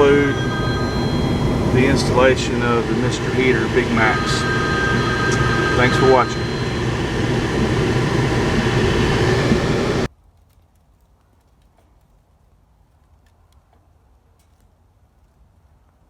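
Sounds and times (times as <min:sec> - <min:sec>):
gas heater blower and burner: 0:00.0 - 0:10.1.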